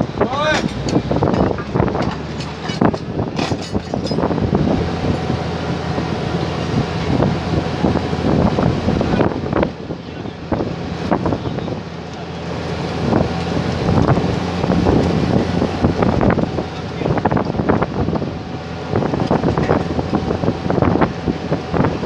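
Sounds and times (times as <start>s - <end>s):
drilling rig machinery drone: 0.0s - 22.0s
metallic clanks of drill pipe: 0.5s - 4.3s.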